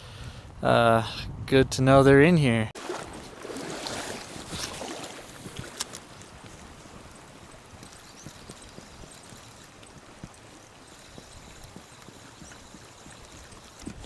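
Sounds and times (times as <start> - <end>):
river water running: 2.8 - 14.0.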